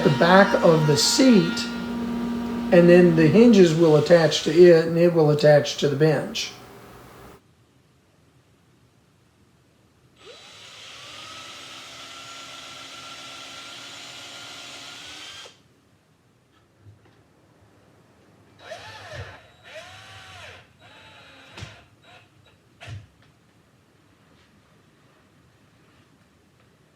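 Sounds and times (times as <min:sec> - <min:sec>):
electric drill running: 0:00.0 - 0:05.0, 0:10.2 - 0:15.6, 0:18.6 - 0:21.9.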